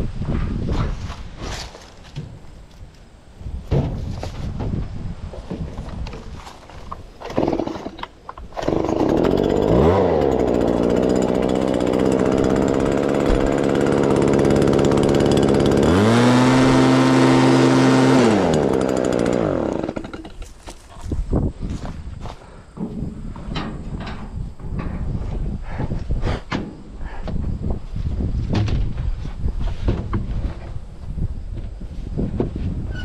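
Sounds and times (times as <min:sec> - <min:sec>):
engine running and revving: 0:08.8 - 0:19.9.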